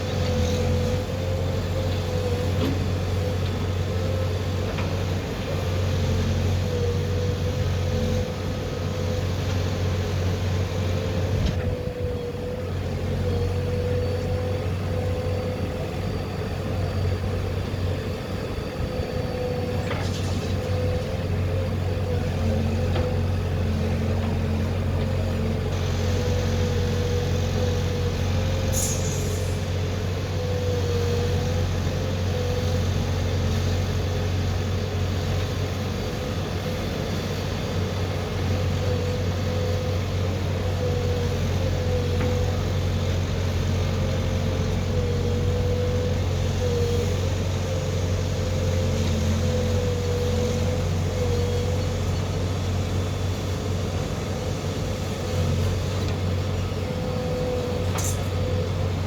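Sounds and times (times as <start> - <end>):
diesel engine running: 0.0 - 59.0
wavering engine whine: 0.0 - 59.0
short high hiss: 28.7 - 29.6.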